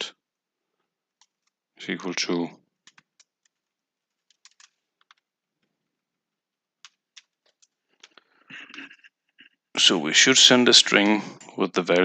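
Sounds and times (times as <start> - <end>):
computer keyboard typing: 1.1 - 1.6, 2.8 - 6.0, 6.8 - 9.5, 10.9 - 12.0.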